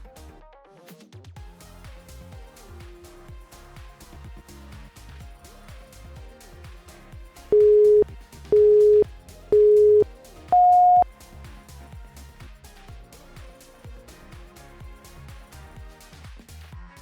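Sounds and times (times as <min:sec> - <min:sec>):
upbeat background music: 0:00.0 - 0:17.0
interval timer beeps: 0:07.5 - 0:11.0.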